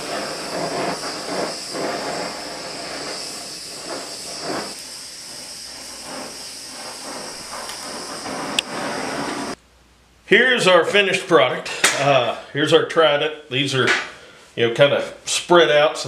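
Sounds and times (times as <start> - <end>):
gas torch flame hissing: 0.0 - 9.6.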